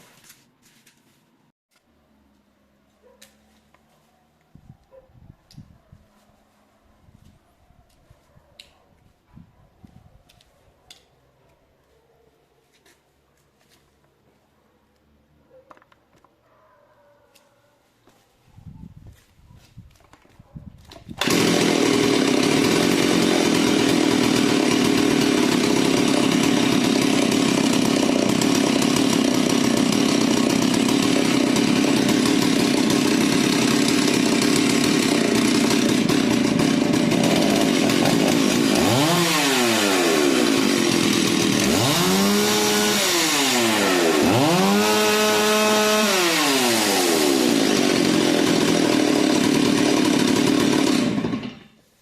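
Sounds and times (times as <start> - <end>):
chainsaw revving: 21.2 - 51.8.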